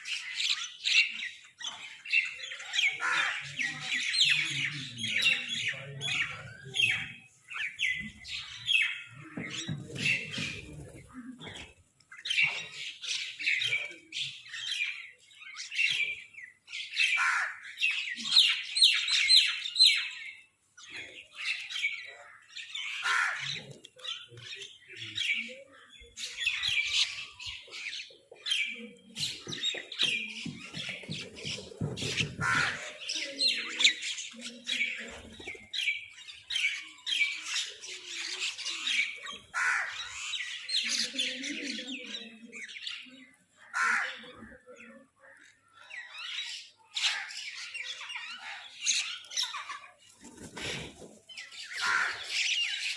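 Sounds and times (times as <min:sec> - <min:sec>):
crows cawing: 0:17.2 - 0:17.6, 0:23.0 - 0:23.5, 0:32.4 - 0:32.9, 0:39.5 - 0:40.0, 0:43.7 - 0:44.2, 0:51.8 - 0:52.3.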